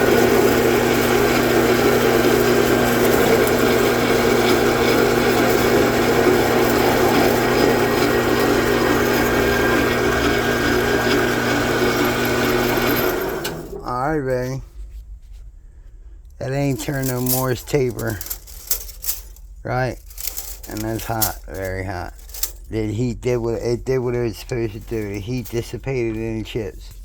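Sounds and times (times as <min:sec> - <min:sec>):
lathe motor humming: 0:00.0 - 0:13.8
tool cutting metal: 0:00.0 - 0:13.8.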